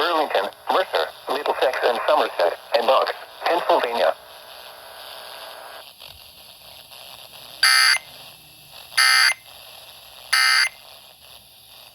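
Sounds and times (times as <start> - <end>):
radio hiss: 0.0 - 11.9
harsh digital buzzing: 6.2 - 11.9.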